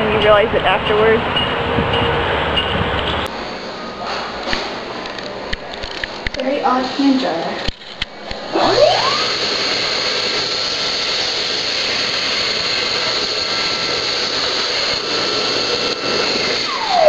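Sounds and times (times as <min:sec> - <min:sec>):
electric hand dryer whining: 0:08.2 - 0:17.0.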